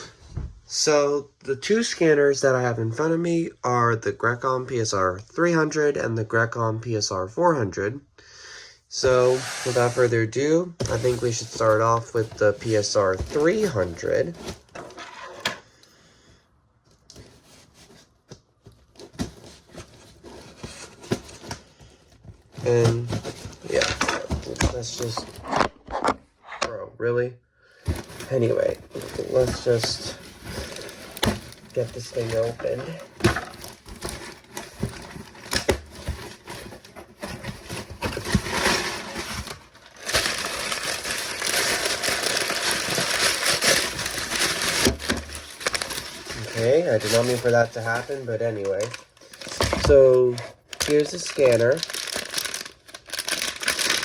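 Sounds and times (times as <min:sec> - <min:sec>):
cardboard box rubbing and scraping: 0:09.2 - 0:10.1
cardboard packaging ripping: 0:09.2 - 0:10.1, 0:27.9 - 0:54.0
packaging knocks and rustles: 0:10.8 - 0:15.1, 0:17.0 - 0:26.1, 0:27.8 - 0:54.0.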